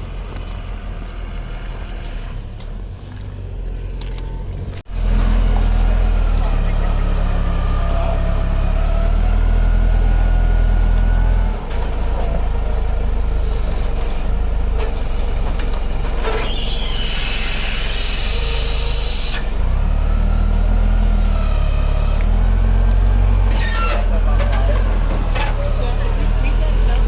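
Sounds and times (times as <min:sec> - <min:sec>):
heavy vehicle engine running: 0:00.0 - 0:27.0.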